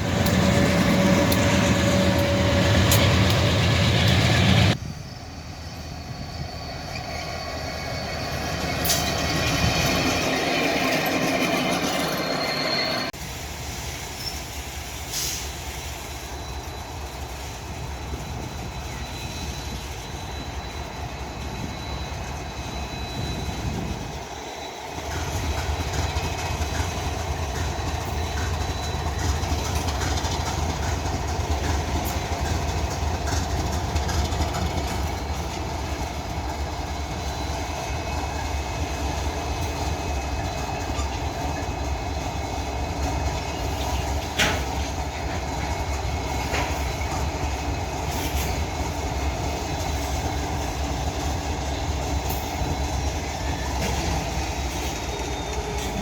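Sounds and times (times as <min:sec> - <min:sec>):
freight train rumbling past: 0:00.0 - 0:56.0
wheels clicking over rail joints: 0:25.0 - 0:36.6.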